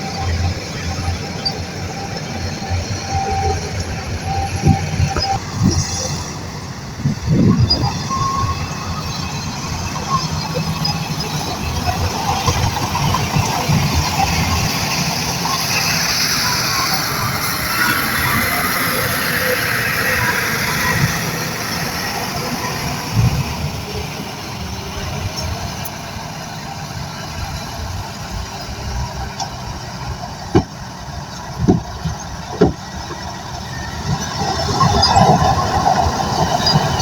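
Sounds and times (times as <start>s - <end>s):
bulldozer diesel engine rumbling: 0.0s - 37.0s
sharp knocks: 30.5s - 30.8s, 31.6s - 32.8s.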